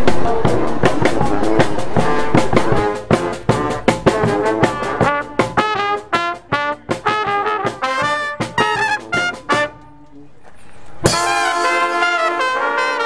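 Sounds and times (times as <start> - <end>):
brass band playing: 0.0 - 10.4, 11.0 - 13.0
trumpets and trombones: 0.0 - 10.4, 11.0 - 13.0
percussive hits: 11.1 - 12.1.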